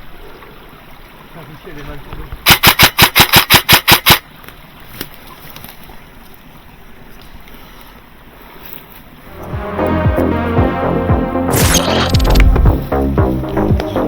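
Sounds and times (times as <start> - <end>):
airsoft gun firing rapid shots: 2.5 - 4.2
faint wind-like background noise: 4.2 - 9.4.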